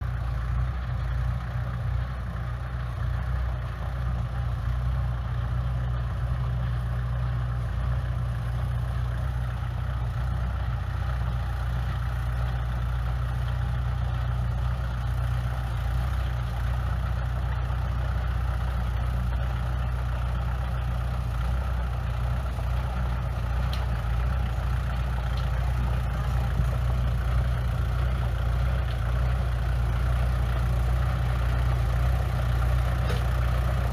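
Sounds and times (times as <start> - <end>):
heavy diesel engine droning: 0.0 - 33.9.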